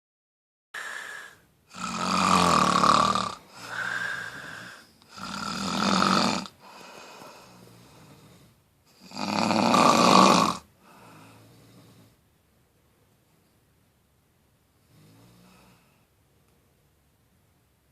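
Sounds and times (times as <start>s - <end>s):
loud buzzy snores: 0.8s - 12.2s, 14.8s - 16.0s.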